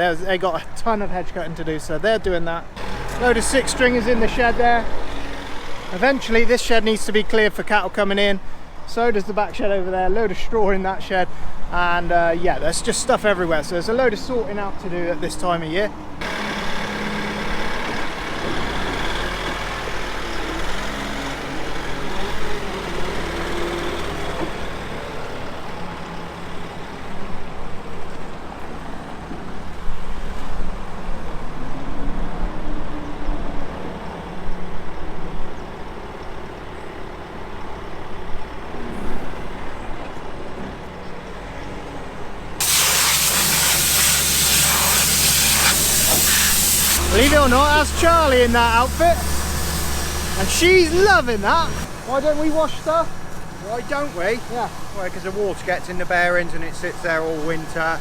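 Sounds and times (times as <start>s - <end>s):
farm vehicle engine revving: 2.8s - 7.6s, 12.6s - 27.2s, 42.6s - 58.0s
compressed air hissing: 16.2s - 19.5s, 42.6s - 52.0s.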